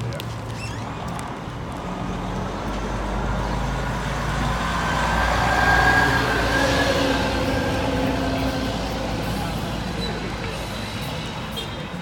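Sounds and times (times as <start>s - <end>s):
heavy vehicle engine rumble: 0.0s - 12.0s
high squeal: 5.3s - 8.2s.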